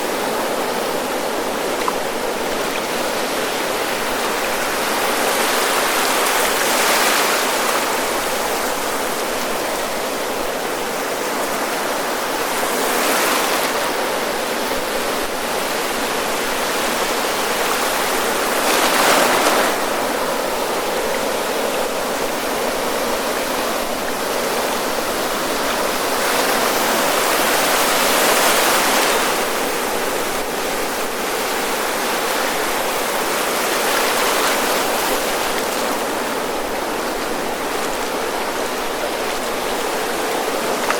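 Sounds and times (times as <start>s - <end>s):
ocean surf on a beach: 0.0s - 40.9s
waves crashing: 0.0s - 40.9s.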